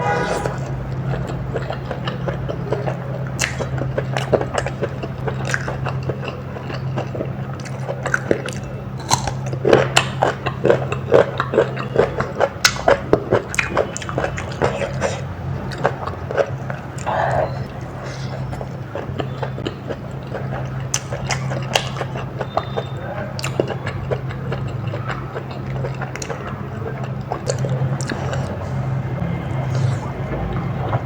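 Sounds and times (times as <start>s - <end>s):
low hum: 0.0s - 1.6s
crunchy chewing: 0.9s - 31.0s.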